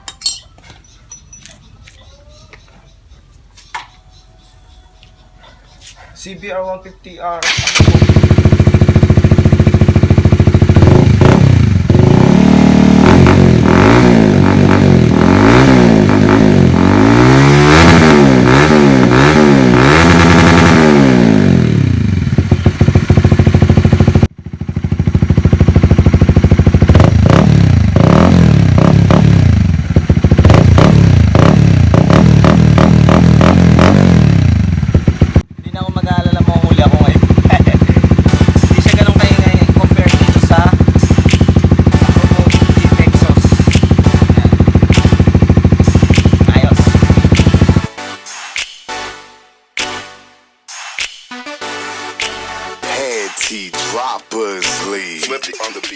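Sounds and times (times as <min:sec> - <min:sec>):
motorcycle engine revving: 0:07.4 - 0:47.9.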